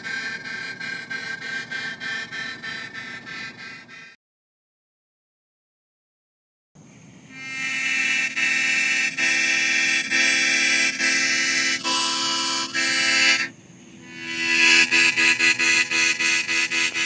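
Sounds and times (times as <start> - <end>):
loud horn-like chord: 7.3 - 17.0.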